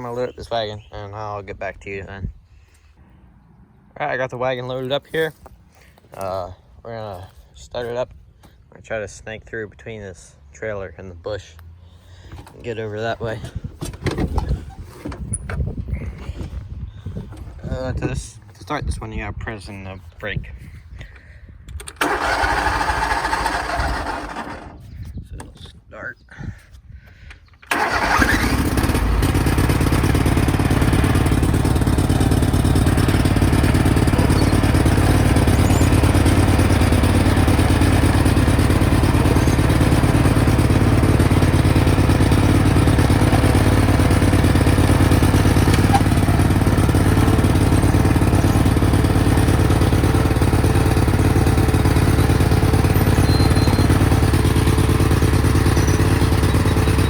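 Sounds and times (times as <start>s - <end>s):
tractor engine starting and running: 11.3s - 19.0s, 21.6s - 25.7s, 27.2s - 57.0s.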